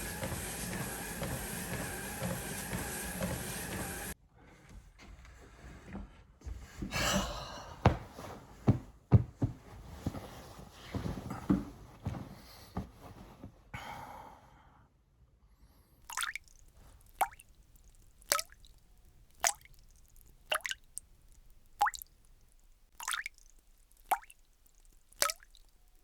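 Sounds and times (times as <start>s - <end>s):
shuffling: 0.0s - 4.2s, 7.8s - 13.6s
water drops plinking: 16.1s - 26.0s.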